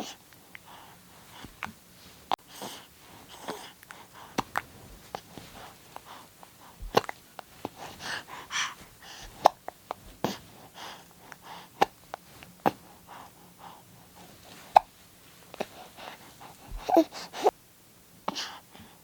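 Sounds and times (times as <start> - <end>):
baby breathing softly: 0.0 - 17.6, 18.2 - 19.0
baby hiccuping: 6.9 - 7.2, 14.7 - 14.9.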